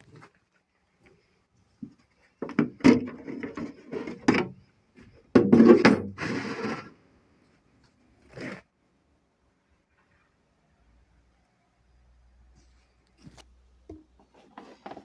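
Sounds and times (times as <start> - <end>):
clunks and knocks of handling: 1.8 - 6.4.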